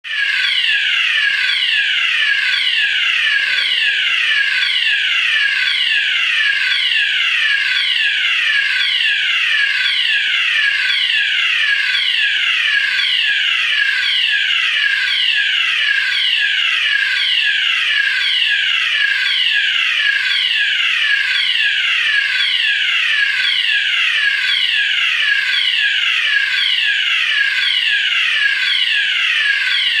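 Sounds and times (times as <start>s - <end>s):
electronic alarm siren sweeping down: 0.0s - 30.0s.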